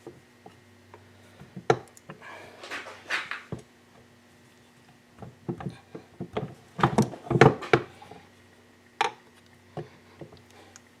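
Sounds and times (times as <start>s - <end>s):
metal parts knocking and clunking: 5.4s - 7.9s.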